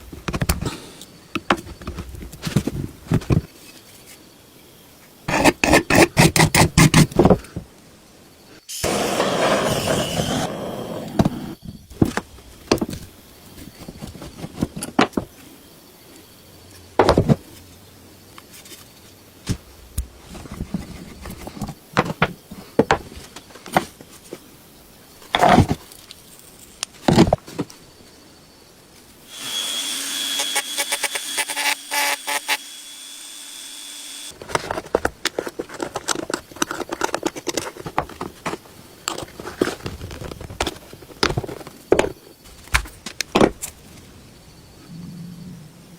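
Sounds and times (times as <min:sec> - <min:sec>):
power tool whining: 0:29.3 - 0:34.4.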